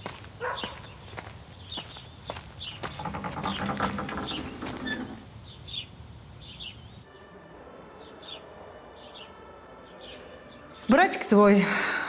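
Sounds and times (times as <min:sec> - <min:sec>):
small birds chirping: 0:00.0 - 0:07.1
faint outdoor background noise: 0:00.0 - 0:12.0.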